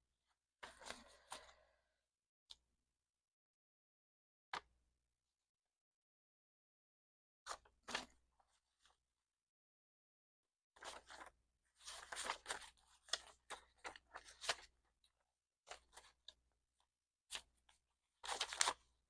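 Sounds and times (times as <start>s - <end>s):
paper money rustling: 18.2s - 18.8s.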